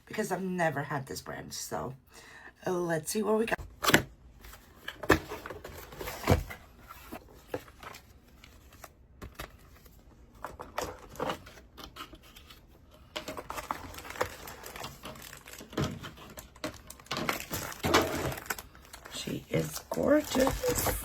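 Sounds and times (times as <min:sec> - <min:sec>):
packaging rustling and crinkling: 0:04.5 - 0:21.0.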